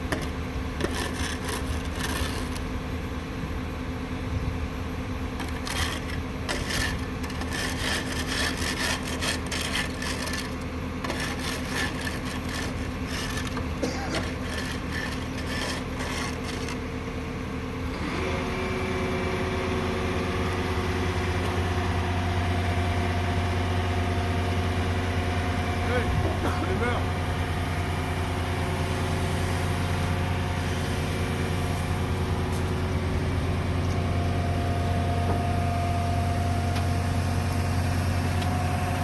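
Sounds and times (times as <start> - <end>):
construction machine engine running: 0.0 - 39.0
scraping and rasping: 0.1 - 2.7, 5.4 - 16.8.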